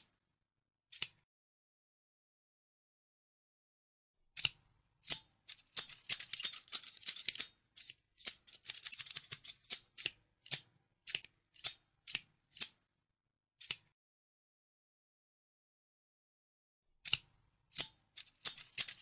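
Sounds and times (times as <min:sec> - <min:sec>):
scissors snipping: 0:00.9 - 0:01.2, 0:04.4 - 0:12.8, 0:13.6 - 0:13.9, 0:17.0 - 0:19.0.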